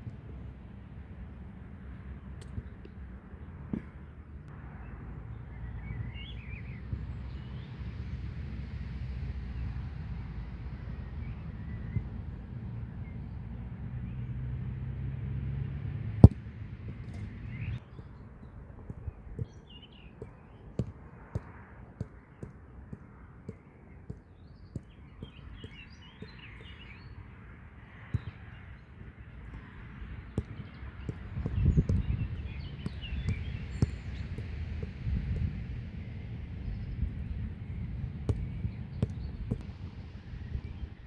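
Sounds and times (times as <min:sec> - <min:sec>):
light irregular taps: 0:02.3 - 0:04.6, 0:16.2 - 0:26.9, 0:29.4 - 0:35.8, 0:38.3 - 0:39.8.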